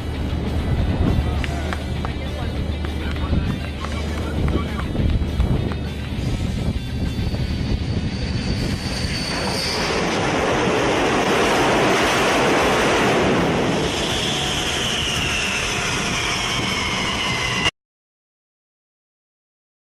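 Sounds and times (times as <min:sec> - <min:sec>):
vehicle passing with rushing roar: 0:05.2 - 0:17.7
whine gliding down in pitch: 0:07.0 - 0:17.7.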